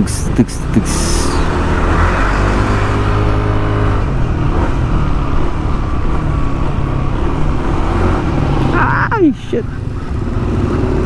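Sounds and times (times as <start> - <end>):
scooter engine running: 3.0 - 11.0.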